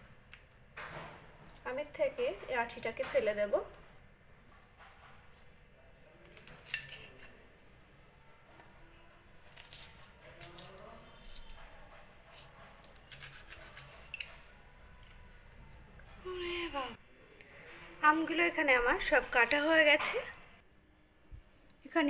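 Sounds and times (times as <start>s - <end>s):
knife cutting and scraping mango: 8.6s - 15.9s.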